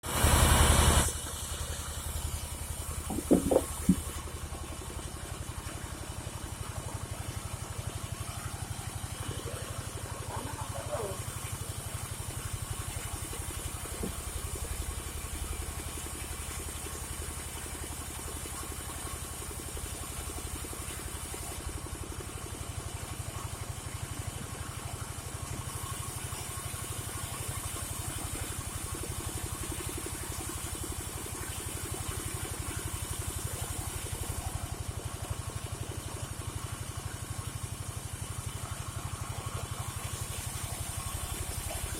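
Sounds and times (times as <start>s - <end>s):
sawmill engine running: 0.0s - 4.3s.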